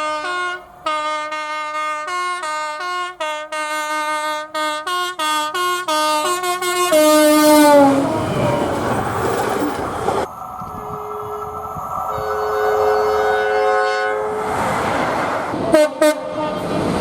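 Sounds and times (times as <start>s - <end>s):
two-tone train horn blasts: 0.0s - 8.8s, 10.6s - 14.6s, 15.7s - 16.8s
train rushing by: 6.8s - 17.0s.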